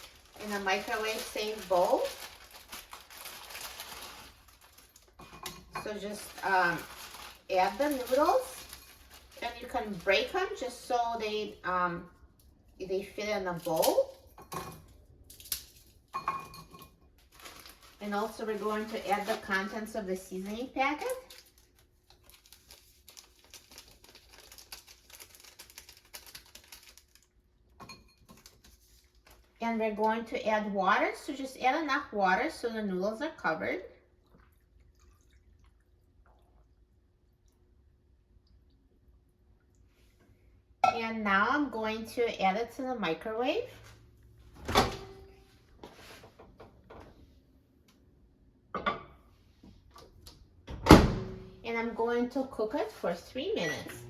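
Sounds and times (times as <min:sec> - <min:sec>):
seasoning packet crinkling: 0:00.0 - 0:05.2, 0:06.2 - 0:10.4, 0:17.2 - 0:27.4.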